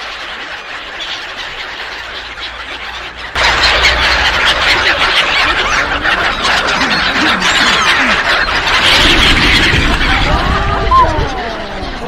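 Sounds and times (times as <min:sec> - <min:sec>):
flock of gulls calling: 0:00.0 - 0:12.0.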